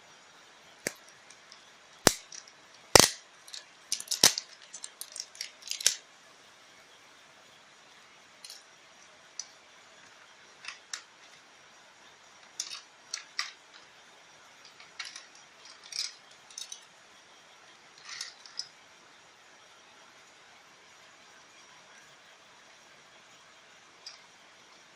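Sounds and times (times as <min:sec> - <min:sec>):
clicks of small hard objects: 0:00.8 - 0:06.0, 0:10.6 - 0:11.4, 0:12.4 - 0:13.9, 0:14.6 - 0:16.9, 0:18.0 - 0:18.7.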